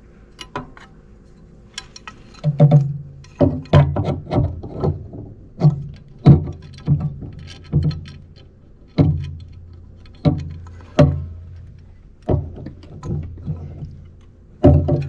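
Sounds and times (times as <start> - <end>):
knocks and thumps with low ring: 2.5 - 8.1, 9.0 - 9.5, 10.2 - 14.0, 14.6 - 15.0.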